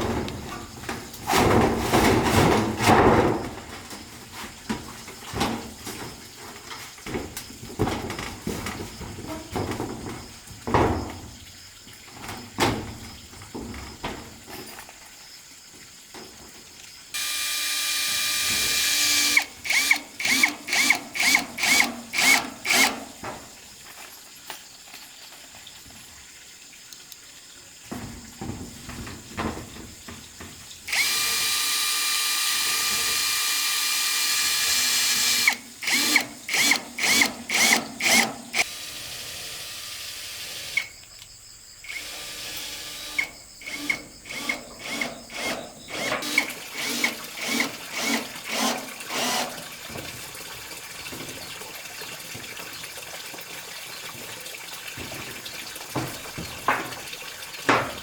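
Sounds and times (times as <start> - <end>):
electric drill whining: 17.2 - 23.0, 30.9 - 40.9, 41.9 - 49.6.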